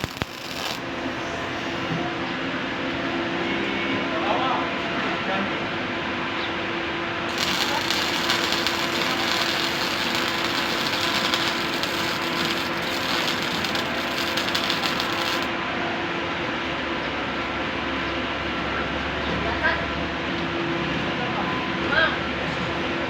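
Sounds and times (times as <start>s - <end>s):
welding arc crackling: 0.0s - 1.1s, 7.3s - 15.5s
welding equipment hum: 0.0s - 1.9s, 7.3s - 15.5s.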